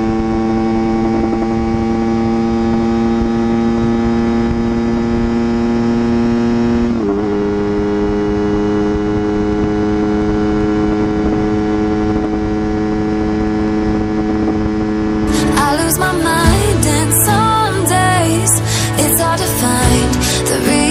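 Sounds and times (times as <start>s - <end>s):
motorcycle engine at high revs: 0.0s - 15.6s.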